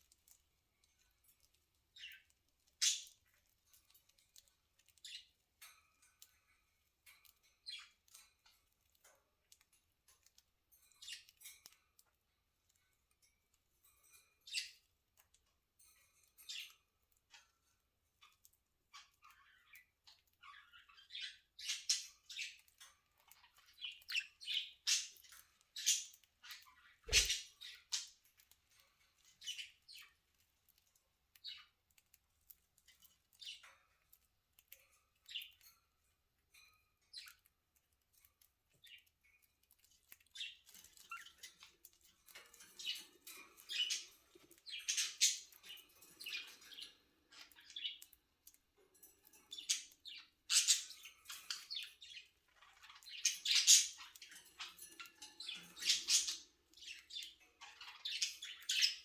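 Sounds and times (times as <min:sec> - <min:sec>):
budgerigars chirping: 0:02.8 - 0:03.1, 0:25.8 - 0:28.1, 0:44.7 - 0:45.6, 0:49.5 - 0:54.8, 0:55.4 - 0:59.0.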